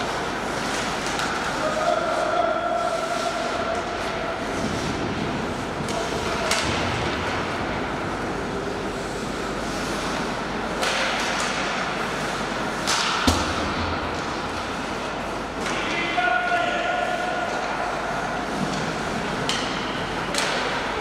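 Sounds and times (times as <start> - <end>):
hockey stick hitting puck: 0.0 - 1.9, 3.1 - 7.9, 10.0 - 21.0
skates scraping on ice: 0.0 - 13.2.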